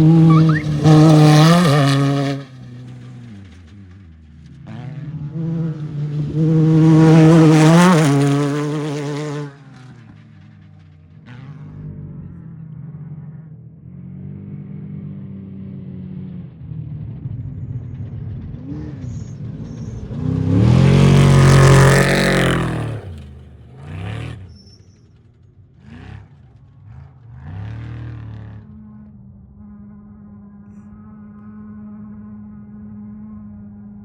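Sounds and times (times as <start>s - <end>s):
vehicle racing past: 0.0s - 4.0s, 4.6s - 10.6s, 18.5s - 24.5s
off-road vehicle engines: 0.0s - 34.0s.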